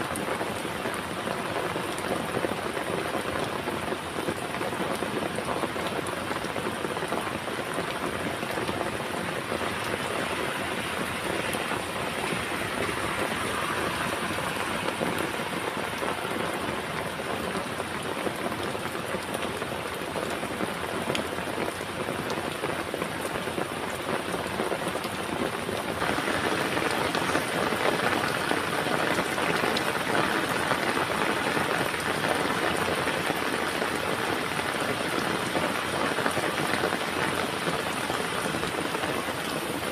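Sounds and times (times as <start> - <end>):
heavy rain falling: 0.0 - 39.9
raindrop ticks: 10.9 - 39.8.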